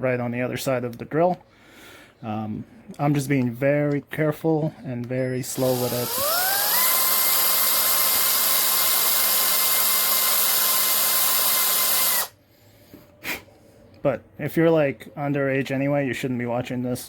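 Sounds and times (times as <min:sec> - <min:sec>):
power drill whining: 0:05.4 - 0:12.4.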